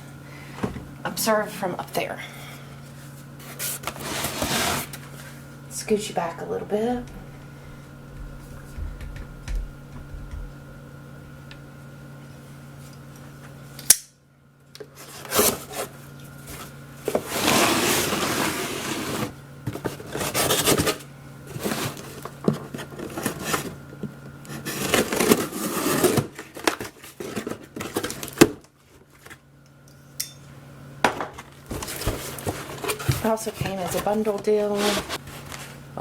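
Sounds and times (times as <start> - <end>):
sharp click: 13.8 - 14.1
cardboard packaging rustling: 15.0 - 23.9, 24.5 - 29.4, 31.5 - 35.9.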